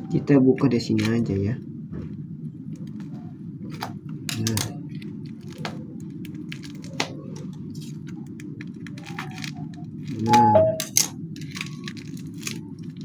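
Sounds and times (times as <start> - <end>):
low background hum: 0.0 - 13.0
plastic package crackling: 3.7 - 13.0.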